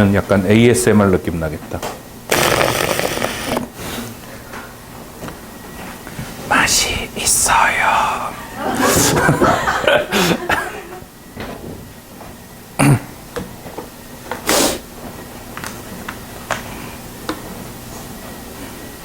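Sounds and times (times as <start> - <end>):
pen scratching strokes: 2.7 - 3.6.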